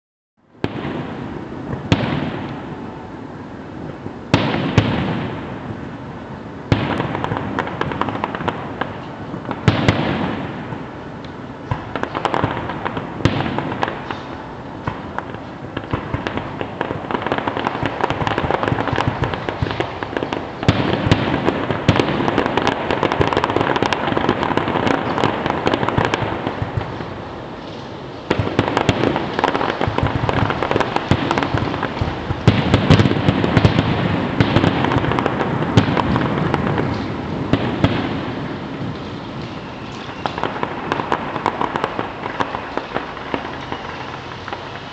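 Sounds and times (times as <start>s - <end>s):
distant fireworks crackle: 0.4s - 44.9s
fireworks booms: 0.5s - 3.0s, 3.9s - 6.0s, 6.6s - 44.9s.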